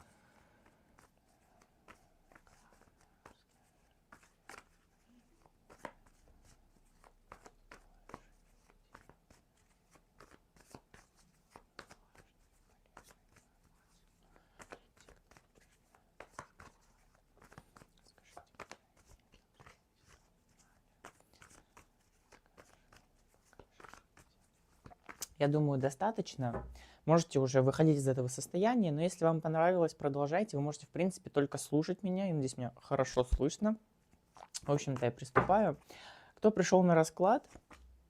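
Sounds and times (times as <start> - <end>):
cards being shuffled: 1.0 - 25.4, 34.1 - 35.8.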